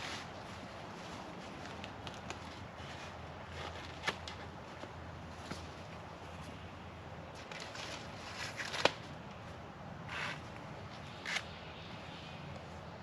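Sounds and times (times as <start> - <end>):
rustling: 0.0 - 6.6, 7.3 - 9.2.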